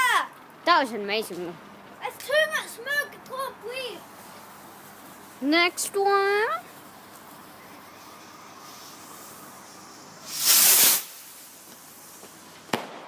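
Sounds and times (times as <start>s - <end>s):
firework bursting crack: 4.0s - 13.0s
firework rocket whoosh: 6.6s - 13.0s.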